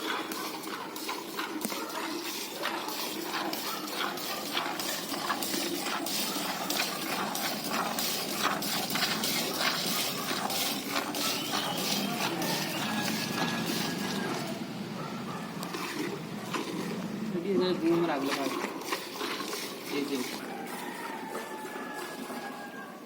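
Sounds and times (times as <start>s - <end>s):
milk squirting into metal pail: 0.0s - 14.6s, 15.6s - 23.0s.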